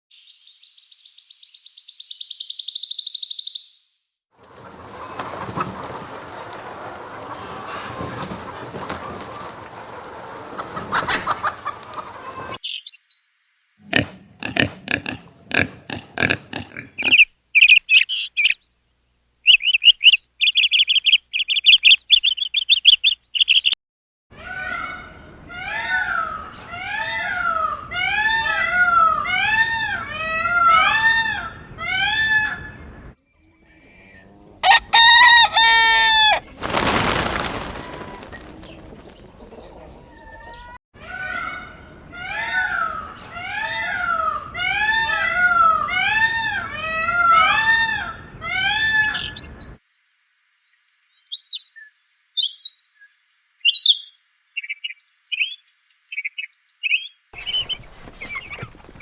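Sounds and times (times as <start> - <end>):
small birds chirping: 0.1 - 3.9, 11.6 - 23.8, 35.6 - 40.8, 48.3 - 59.0
fowl calling: 4.6 - 12.6, 13.9 - 18.6, 24.5 - 49.8, 57.4 - 59.0
rooster crow: 33.9 - 41.4.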